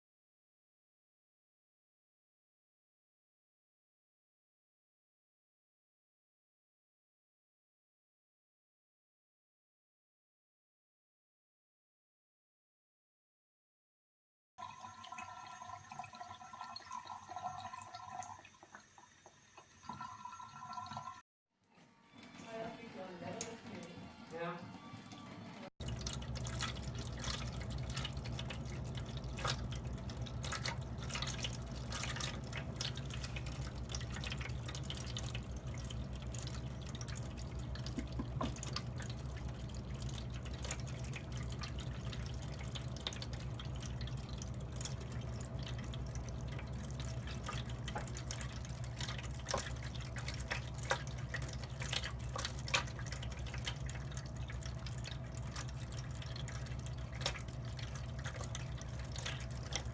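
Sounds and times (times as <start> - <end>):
water drips and splashes: 14.6 - 21.2, 25.8 - 59.9
tap running into sink: 37.8 - 38.9.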